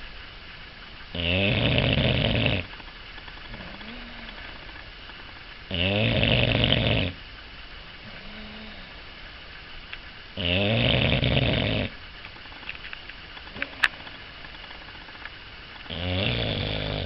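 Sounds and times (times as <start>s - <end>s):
dog snoring: 1.1s - 2.7s, 3.5s - 4.8s, 5.7s - 7.2s, 8.0s - 9.0s, 10.4s - 12.0s, 15.9s - 17.0s.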